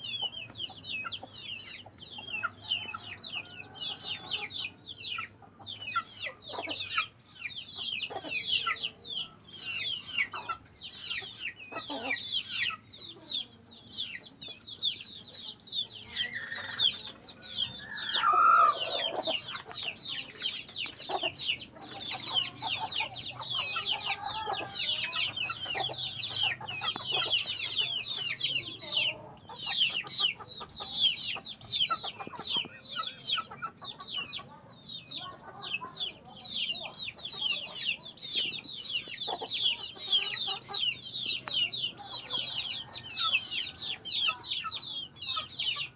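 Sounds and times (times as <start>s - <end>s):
chickens peeping and clucking: 0.0s - 45.9s
loud chicken call: 16.1s - 19.5s.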